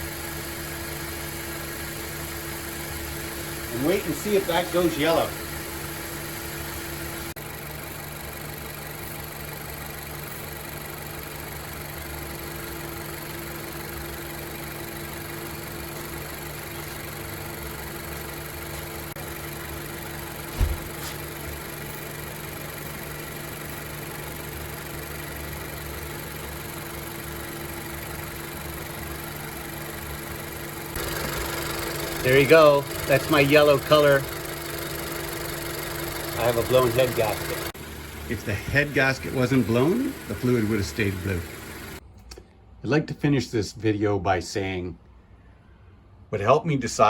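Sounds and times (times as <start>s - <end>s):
car engine idling: 0.0s - 42.0s
thump: 20.5s - 21.2s.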